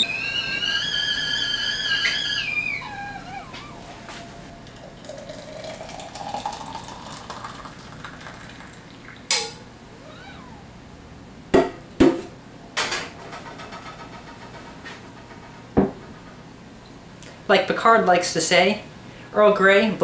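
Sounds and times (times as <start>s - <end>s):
kettle whistling: 0.0s - 9.0s.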